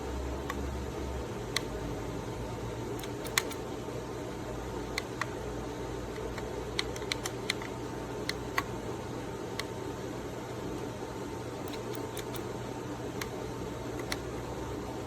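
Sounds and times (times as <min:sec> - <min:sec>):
steady hum: 0:00.0 - 0:15.0
sharp clicks: 0:03.0 - 0:03.6, 0:06.1 - 0:08.8, 0:11.6 - 0:12.5, 0:13.2 - 0:14.3.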